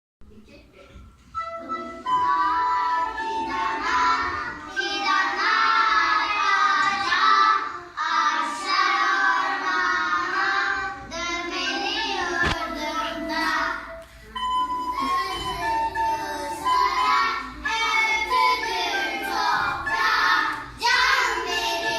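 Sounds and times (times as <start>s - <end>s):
children singing in unison: 1.4s - 21.9s
sharp knock: 12.4s - 12.7s.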